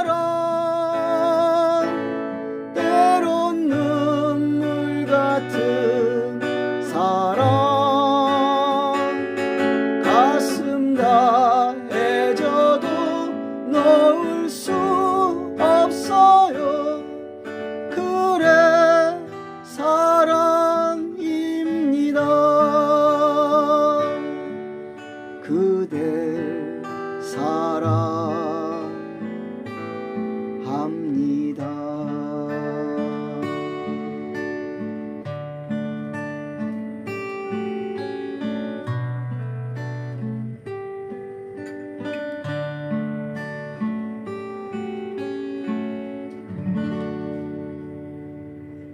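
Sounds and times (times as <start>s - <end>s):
acoustic guitar ballad: 0.0s - 48.9s.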